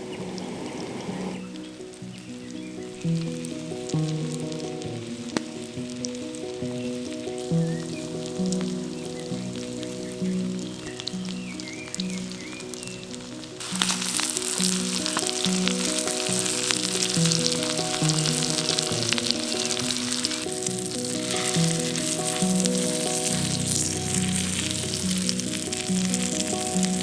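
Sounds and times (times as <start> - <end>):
food sizzling in hot oil: 1.4 - 27.0.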